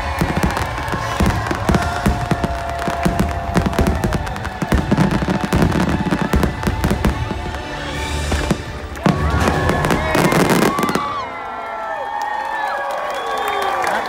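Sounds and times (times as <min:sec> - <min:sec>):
fireworks bangs and crackling: 0:00.0 - 0:11.6
show music: 0:00.8 - 0:11.1.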